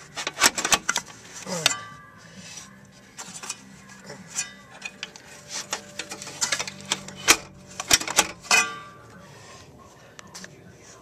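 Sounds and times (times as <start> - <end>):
metal parts clanking: 0.2 - 2.0, 4.3 - 9.0.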